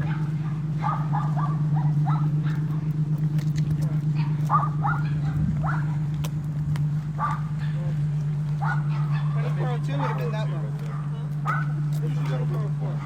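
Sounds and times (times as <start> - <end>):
dog yapping: 0.0 - 2.9, 3.8 - 6.1, 7.2 - 8.0, 8.6 - 11.8
steady low hum: 0.0 - 13.0.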